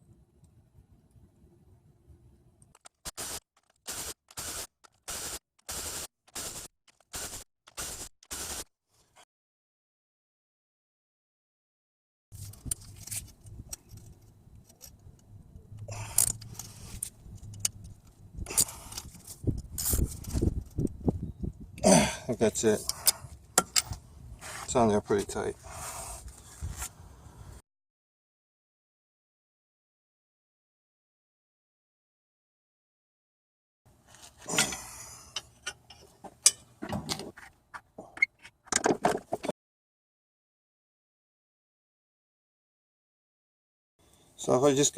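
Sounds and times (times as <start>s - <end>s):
metallic clicks of hand tools: 12.6s - 20.0s.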